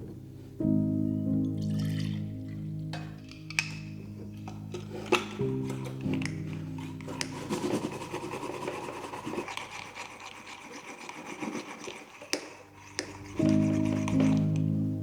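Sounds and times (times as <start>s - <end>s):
soft background music: 0.0s - 15.0s
rubbing and scraping: 3.2s - 14.7s.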